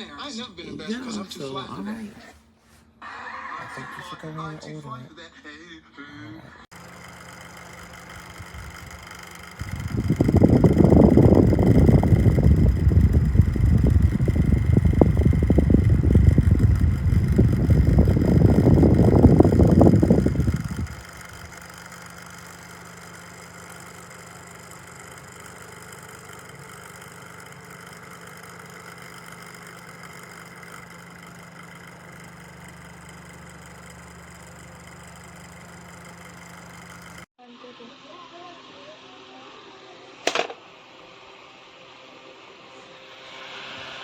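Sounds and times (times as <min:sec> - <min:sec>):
fan airflow buffeting microphone: 0:07.4 - 0:37.2.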